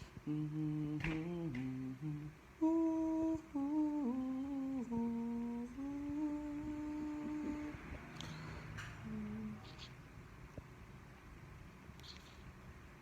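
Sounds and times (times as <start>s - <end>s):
person humming a slow tune: 0.0s - 10.0s.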